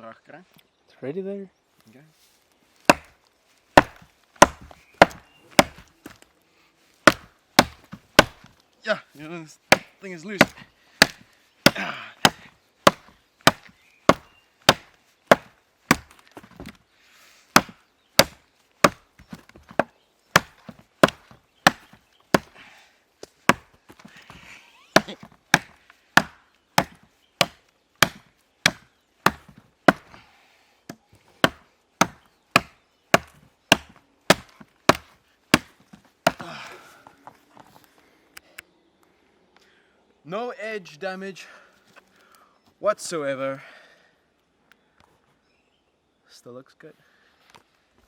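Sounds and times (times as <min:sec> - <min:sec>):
rustle: 0:01.6 - 0:11.6
knife chopping wood: 0:02.8 - 0:03.2, 0:03.8 - 0:06.2, 0:07.0 - 0:08.5, 0:09.7 - 0:16.8, 0:17.5 - 0:22.6, 0:23.2 - 0:30.2, 0:30.9 - 0:36.7.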